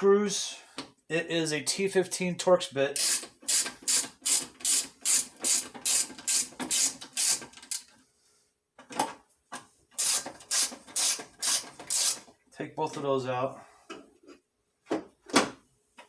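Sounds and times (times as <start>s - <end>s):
ratcheting screwdriver rasping: 3.0s - 7.8s, 10.0s - 12.3s.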